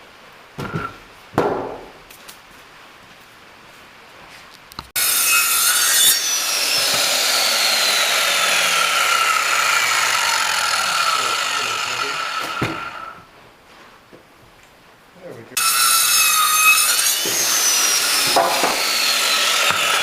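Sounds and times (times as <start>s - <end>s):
circular saw cutting wood: 5.0s - 13.3s, 15.6s - 20.0s.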